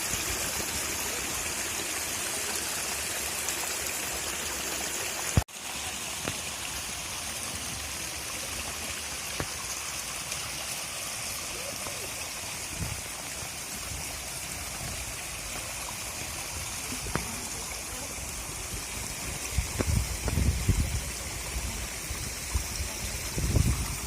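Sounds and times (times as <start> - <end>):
stream water rushing: 0.0 - 24.0.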